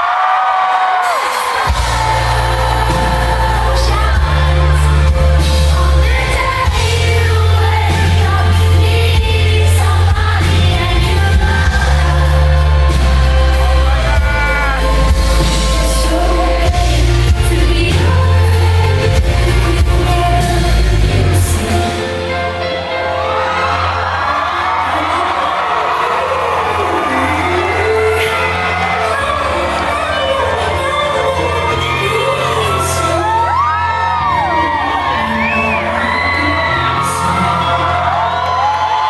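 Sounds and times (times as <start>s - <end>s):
band playing pop music: 0.0s - 39.0s
woman singing: 1.2s - 22.7s, 24.3s - 38.6s
heavy bass notes: 1.7s - 22.5s.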